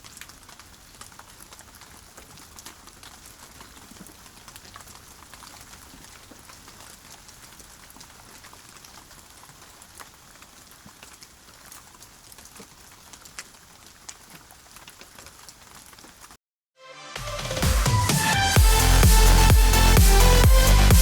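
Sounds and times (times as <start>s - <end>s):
rain drop ticks: 0.0s - 16.3s
steady rain falling: 0.0s - 16.4s, 18.1s - 21.0s.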